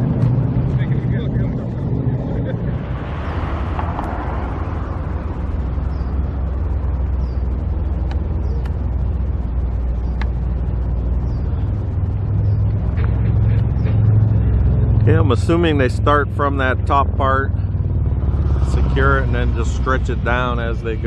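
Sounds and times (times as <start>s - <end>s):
low rumble of engines: 0.0s - 21.0s
faint high chirps and clicks: 10.1s - 10.4s.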